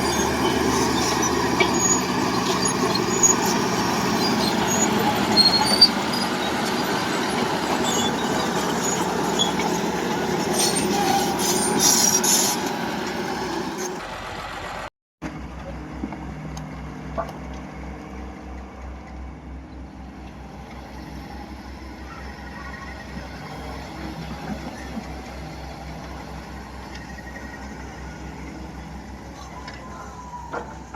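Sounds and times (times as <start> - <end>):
high metallic squeaks: 0.0 - 12.8
heavy diesel engine under load: 0.0 - 30.9.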